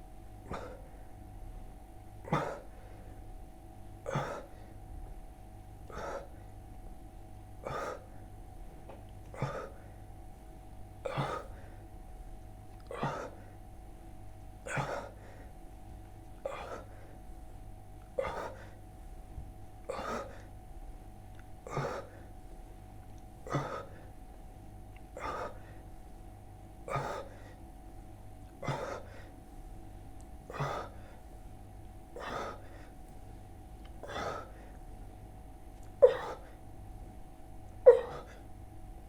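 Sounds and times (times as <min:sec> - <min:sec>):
person breathing heavily: 0:00.4 - 0:01.2, 0:02.2 - 0:03.2, 0:05.8 - 0:06.6, 0:07.6 - 0:08.3, 0:09.3 - 0:10.1, 0:11.0 - 0:11.9, 0:12.9 - 0:13.7, 0:14.6 - 0:15.7, 0:16.4 - 0:17.6, 0:18.2 - 0:19.2, 0:19.9 - 0:20.6, 0:21.6 - 0:22.7, 0:23.4 - 0:24.2, 0:25.1 - 0:25.9, 0:26.8 - 0:27.7, 0:28.6 - 0:29.6, 0:30.4 - 0:31.5, 0:32.1 - 0:33.2, 0:34.0 - 0:35.0.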